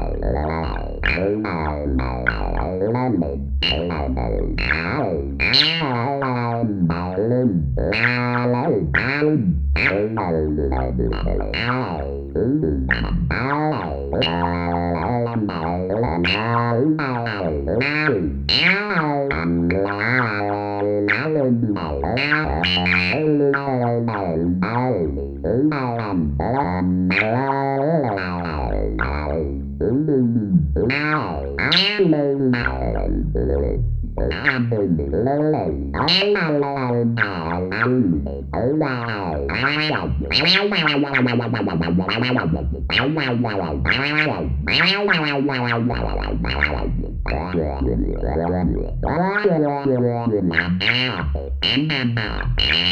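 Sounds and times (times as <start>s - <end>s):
synthesizer alien voice babble: 0.0s - 5.1s, 21.7s - 52.9s.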